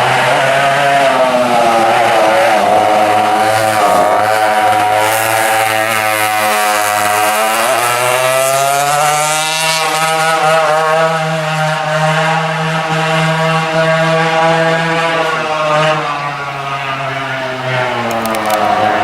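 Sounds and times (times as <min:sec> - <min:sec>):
two-stroke kart engines revving: 0:00.0 - 0:19.0.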